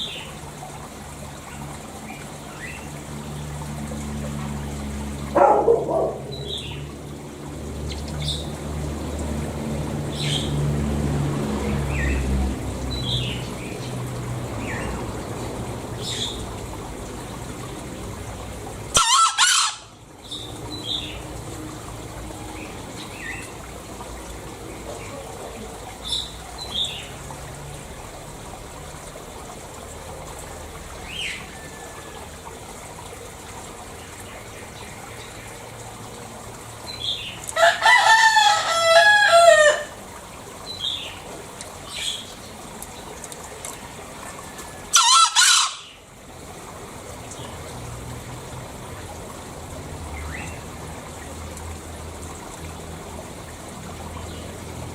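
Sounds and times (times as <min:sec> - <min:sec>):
junglefowl calling: 0:18.9 - 0:20.0, 0:37.6 - 0:40.0, 0:44.8 - 0:46.0.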